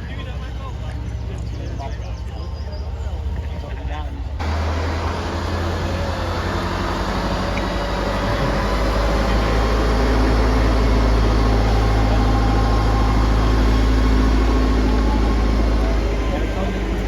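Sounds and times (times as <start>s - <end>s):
heavy vehicle engine rumbling: 0.0s - 17.0s.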